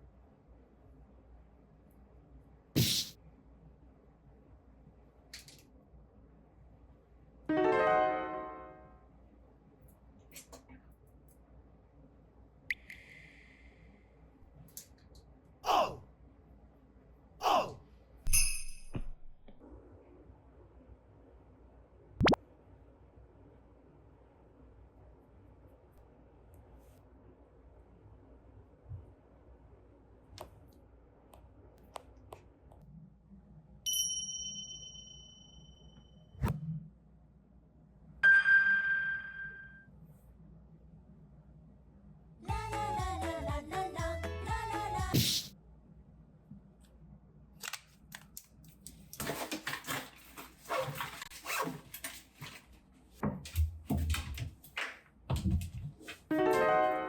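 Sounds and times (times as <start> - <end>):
bright ringing ding: 18.3 - 19.2, 33.9 - 36.3, 38.2 - 39.9.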